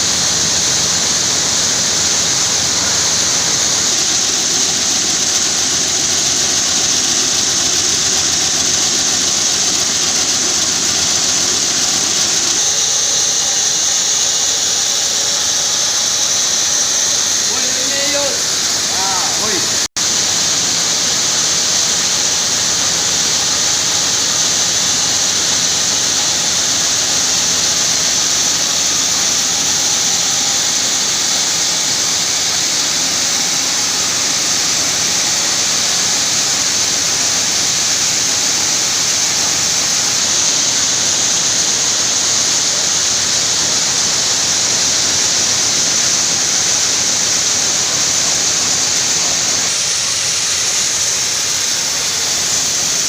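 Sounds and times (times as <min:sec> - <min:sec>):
beans shaking on sieve machine: 0:00.1 - 0:29.6.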